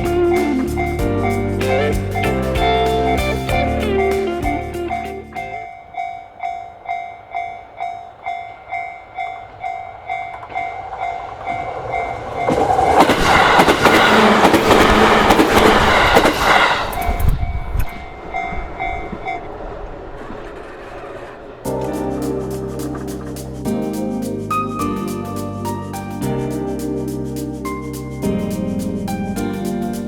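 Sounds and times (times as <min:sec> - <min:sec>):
train passing: 0:00.0 - 0:30.0
level crossing bell ringing: 0:04.9 - 0:12.5.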